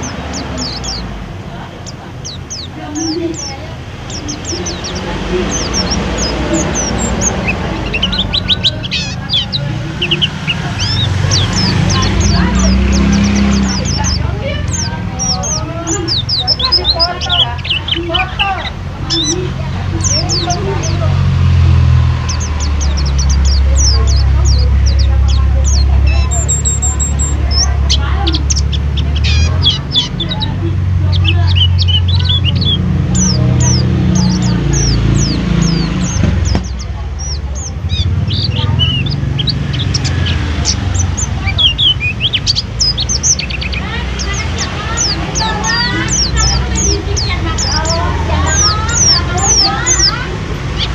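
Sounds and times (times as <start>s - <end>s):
bird chirping and trilling: 0.0s - 50.9s
steady low rumble: 0.0s - 50.9s.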